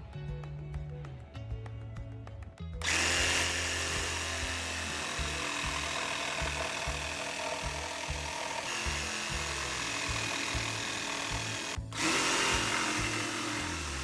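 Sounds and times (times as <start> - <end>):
power drill into plywood: 2.8 - 14.0.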